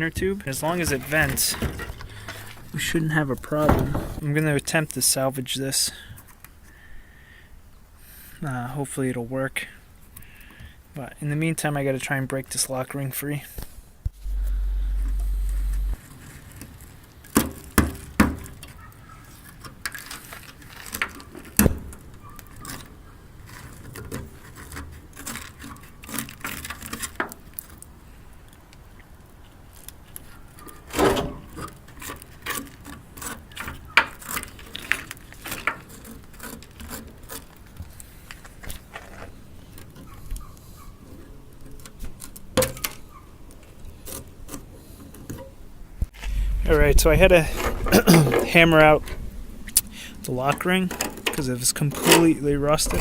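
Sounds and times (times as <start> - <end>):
metal scraping: 14.2 - 16.0, 46.2 - 49.3.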